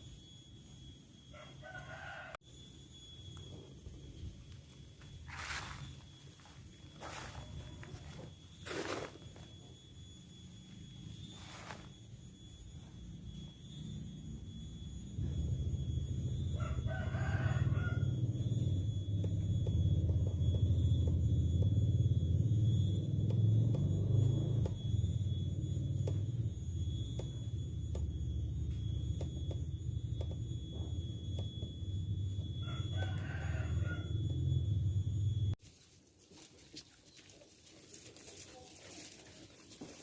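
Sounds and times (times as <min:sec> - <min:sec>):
rooster crowing: 0:01.3 - 0:02.6, 0:15.2 - 0:21.3, 0:32.1 - 0:35.5.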